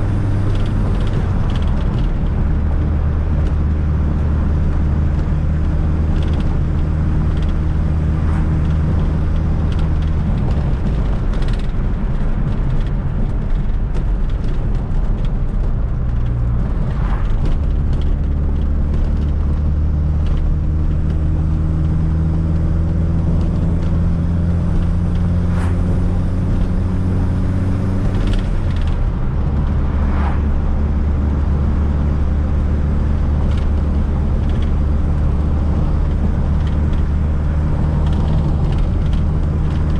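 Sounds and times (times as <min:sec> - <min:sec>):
car engine running while driving: 0:00.0 - 0:39.9
light clicks and rattles: 0:37.8 - 0:39.9.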